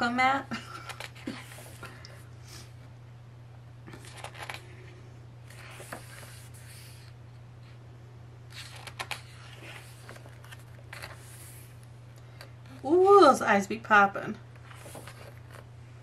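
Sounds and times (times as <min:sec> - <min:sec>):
steady low hum: 0:00.0 - 0:16.0
paper rustling and crackling: 0:03.9 - 0:04.6, 0:08.5 - 0:11.8, 0:14.6 - 0:15.7.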